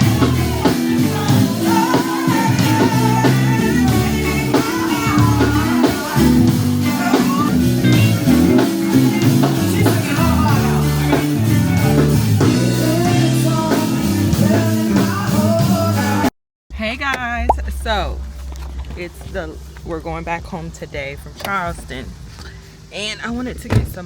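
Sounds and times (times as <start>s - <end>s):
song with singing and beat: 0.0s - 16.3s.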